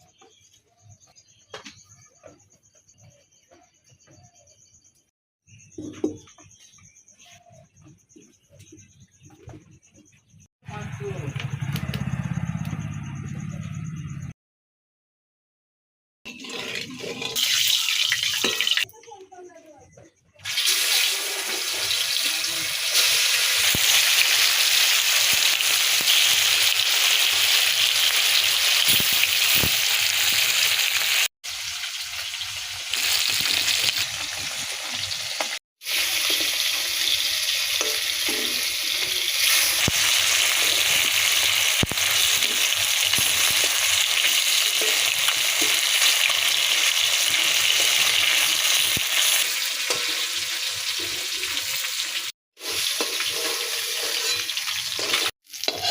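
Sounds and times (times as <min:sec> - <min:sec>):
food sizzling in oil: 0:16.3 - 0:18.9, 0:20.4 - 0:55.9
stirring in pan: 0:52.6 - 0:55.9.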